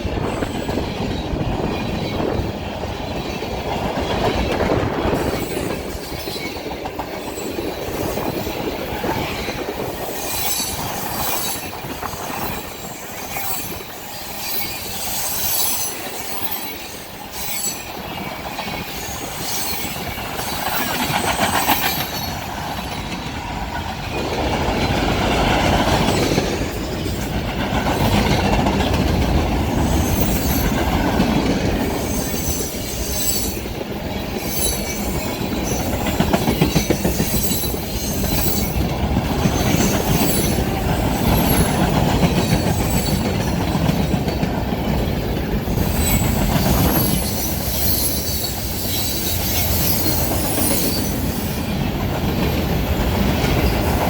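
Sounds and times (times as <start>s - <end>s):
freight train rumble and clatter: 0.0s - 54.0s
wheels squealing: 10.0s - 22.9s, 32.0s - 43.7s, 45.7s - 51.8s.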